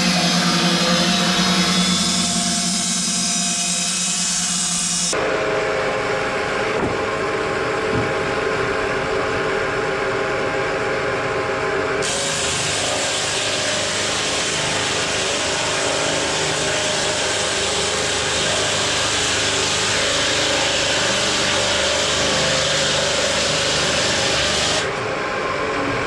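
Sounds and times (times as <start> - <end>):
hissy machine noise: 0.0 - 9.1, 12.0 - 26.0
sawmill machinery humming: 0.0 - 26.0.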